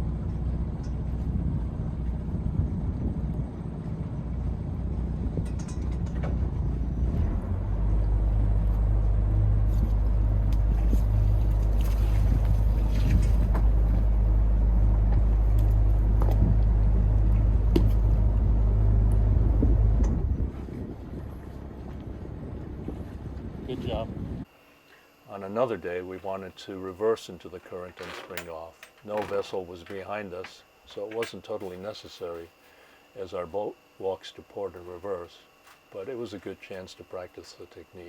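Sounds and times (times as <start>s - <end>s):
boat engine running: 0.0s - 24.4s.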